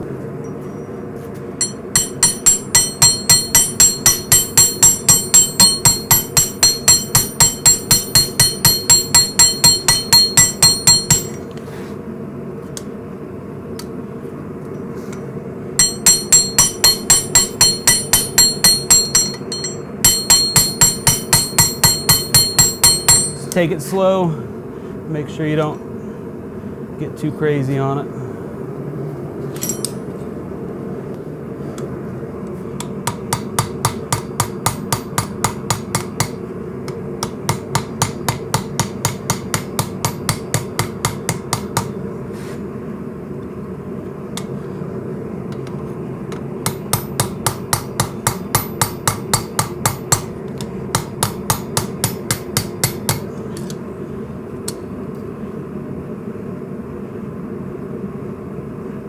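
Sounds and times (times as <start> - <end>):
steady low hum: 0.0 - 59.0
hammer striking steel on anvil: 1.6 - 11.5, 15.8 - 23.6, 29.6 - 30.1, 32.8 - 42.0, 46.3 - 53.8.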